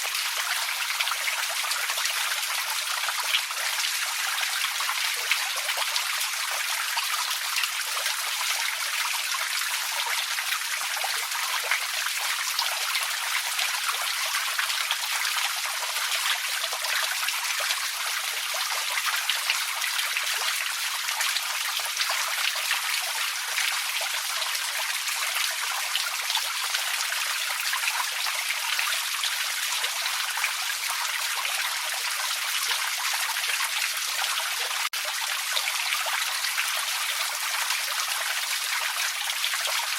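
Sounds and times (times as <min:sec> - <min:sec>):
creek babbling over stones: 0:00.0 - 0:39.9.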